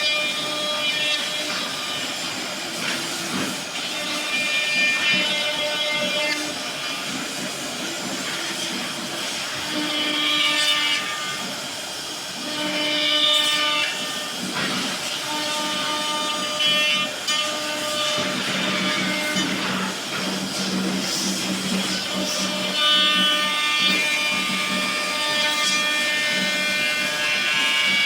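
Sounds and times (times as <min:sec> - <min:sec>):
cnc drive motors whining: 0:00.0 - 0:28.0.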